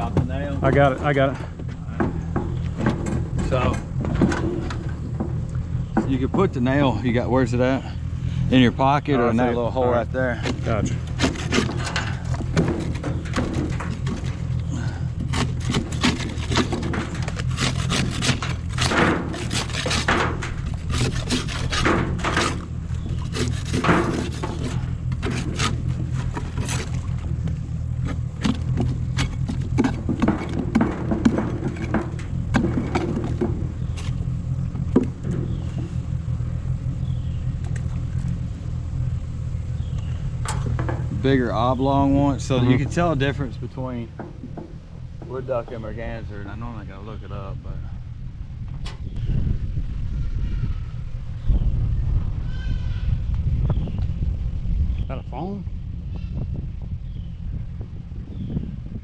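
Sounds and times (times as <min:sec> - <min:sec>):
scraping on wooden nest box: 0:00.0 - 0:38.5
steady low rumble: 0:00.0 - 0:59.0.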